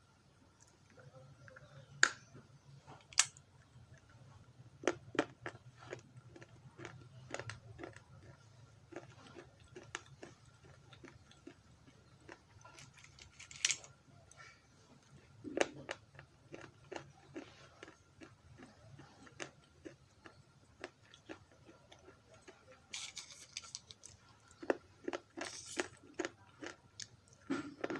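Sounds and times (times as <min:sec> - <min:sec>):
person biting and chewing fruit: 0:04.8 - 0:13.1, 0:15.2 - 0:27.9.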